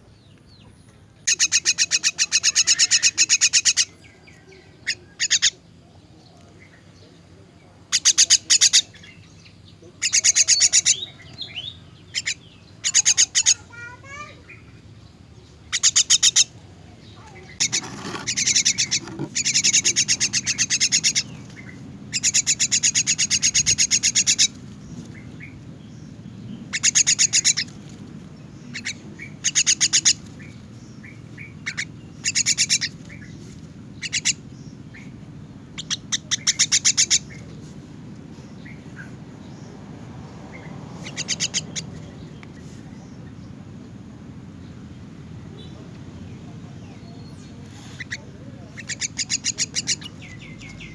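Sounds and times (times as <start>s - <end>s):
young myna rattling begging calls: 1.2s - 4.0s, 4.8s - 5.6s, 7.9s - 9.1s, 10.0s - 15.0s, 15.6s - 27.9s, 28.5s - 37.5s, 40.5s - 42.2s, 46.7s - 50.9s.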